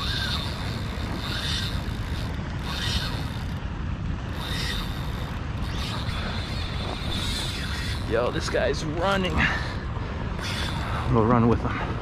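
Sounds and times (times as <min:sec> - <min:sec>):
fishing reel whirring: 0:00.0 - 0:11.3
low rumble of wind: 0:00.0 - 0:12.0.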